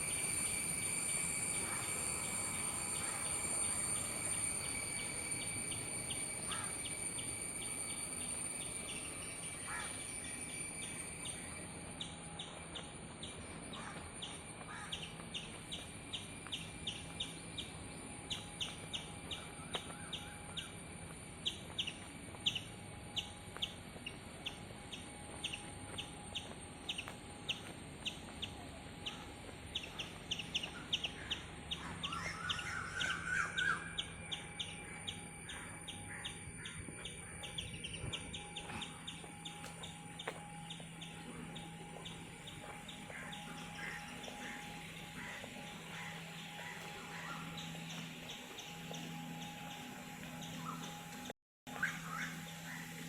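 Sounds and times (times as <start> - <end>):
steady high-pitched hum: 0.0 - 53.0
other bird calls: 26.4 - 53.0.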